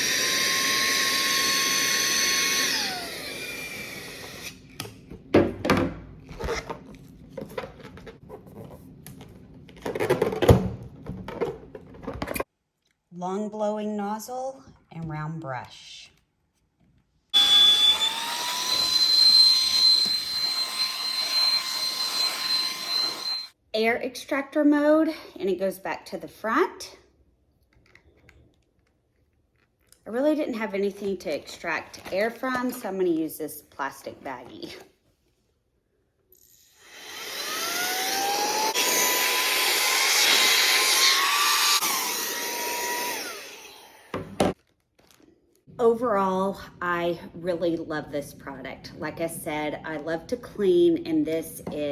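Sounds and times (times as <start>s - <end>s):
handheld vacuum motor whining: 0.0s - 4.8s, 17.4s - 23.6s, 36.4s - 44.5s.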